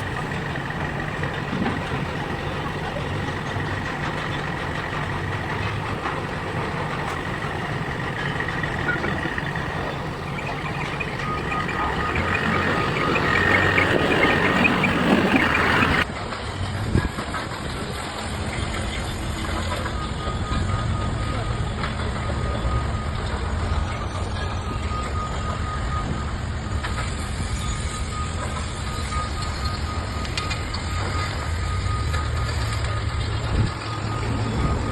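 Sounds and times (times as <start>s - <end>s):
electronic warning beep: 0.0s - 16.0s
heavy vehicle engine running: 0.0s - 16.1s, 26.3s - 34.9s.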